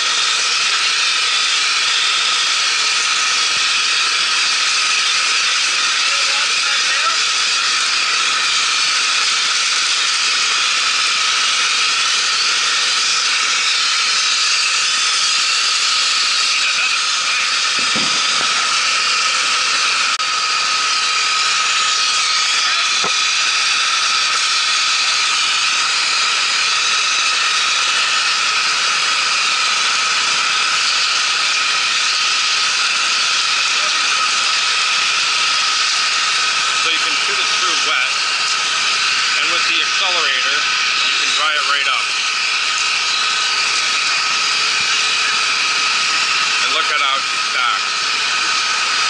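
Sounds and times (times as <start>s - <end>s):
concrete spray hiss: 0.0s - 49.0s.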